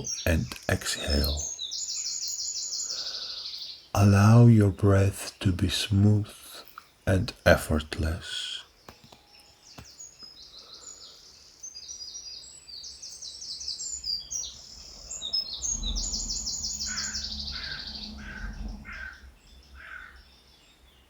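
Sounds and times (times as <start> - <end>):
birds chirping and trilling: 0.0 - 21.0
low bird call: 13.9 - 20.3.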